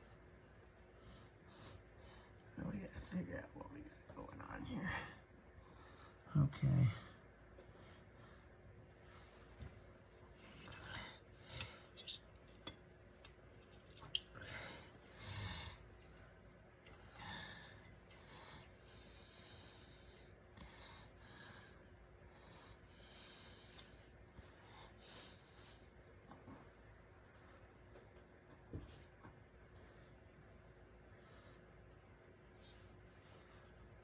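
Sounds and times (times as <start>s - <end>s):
faint steady hum: 0.0s - 34.0s
rustling and scraping of wires: 9.2s - 19.0s
light clicks of metal parts: 10.5s - 14.4s.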